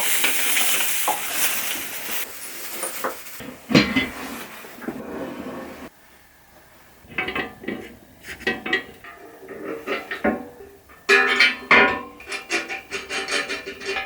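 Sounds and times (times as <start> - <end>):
rustling or scraping: 0.0 - 14.0
hard parts knocking and clinking: 7.0 - 14.0.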